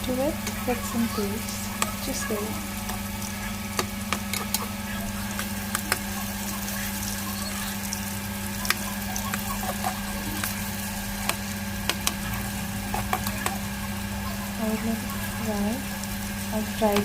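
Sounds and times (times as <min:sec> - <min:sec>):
deep-frying sizzle with pops: 0:00.0 - 0:17.0
low steady hum: 0:00.0 - 0:17.0.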